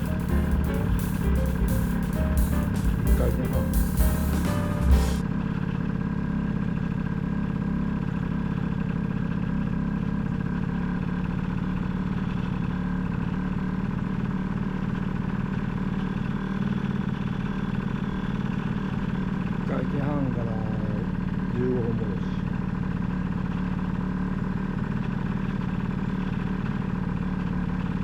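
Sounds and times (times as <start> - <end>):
scooter engine idling: 5.6 - 28.0.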